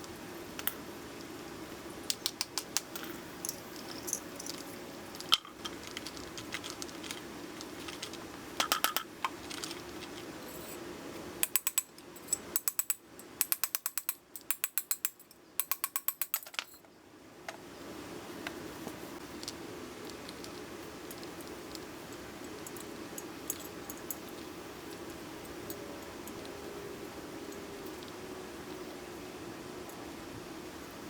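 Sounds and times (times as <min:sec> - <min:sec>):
metal tool clicks and clinks: 0:02.1 - 0:07.2
low steady hum: 0:16.6 - 0:31.0.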